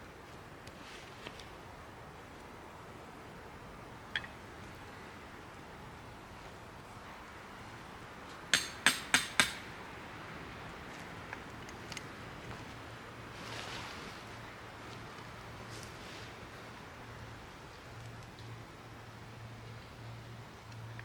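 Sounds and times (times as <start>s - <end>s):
soft rustle: 0.2s - 2.6s, 10.8s - 18.6s
ringing hammer strikes: 8.5s - 9.7s.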